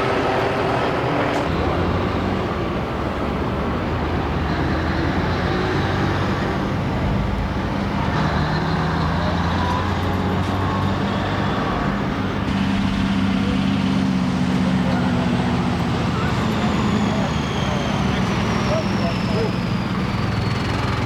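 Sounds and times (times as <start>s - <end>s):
helicopter engine and rotors: 6.2s - 21.0s.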